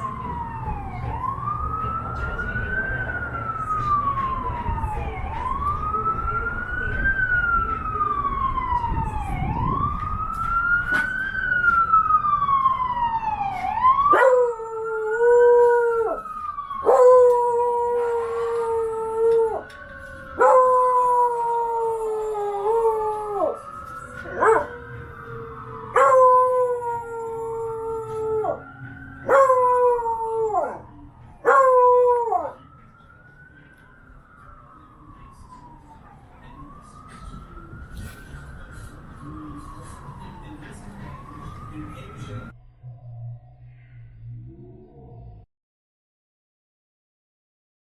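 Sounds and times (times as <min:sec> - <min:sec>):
emergency siren wailing: 0:00.0 - 0:45.5
dog howling: 0:14.1 - 0:16.2, 0:24.2 - 0:24.8, 0:25.9 - 0:28.6, 0:29.2 - 0:32.6.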